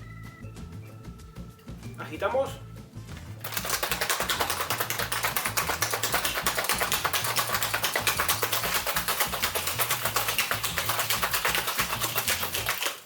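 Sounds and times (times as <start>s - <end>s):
background music: 0.0s - 12.8s
ice rattling in cocktail shaker: 3.4s - 13.0s.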